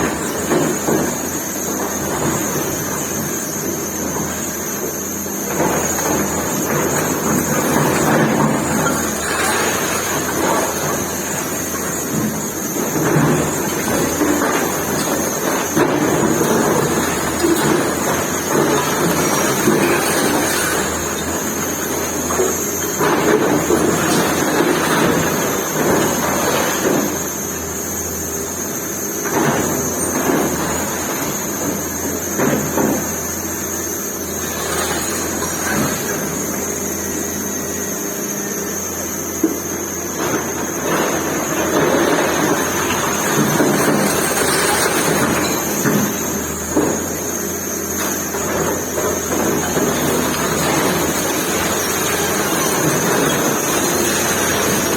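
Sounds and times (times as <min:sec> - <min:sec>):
excavator diesel engine: 0:00.0 - 0:54.9
falling masonry and debris crashing: 0:41.2 - 0:54.9.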